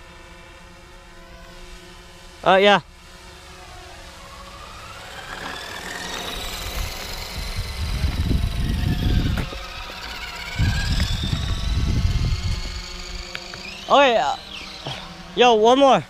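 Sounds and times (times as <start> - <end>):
electric motor whining: 3.0 - 16.0
low rumbling: 4.6 - 13.4.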